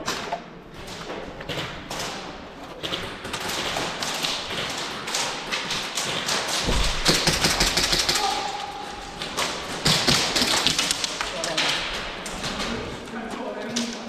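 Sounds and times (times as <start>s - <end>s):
irregular taps and thuds: 2.8s - 8.0s.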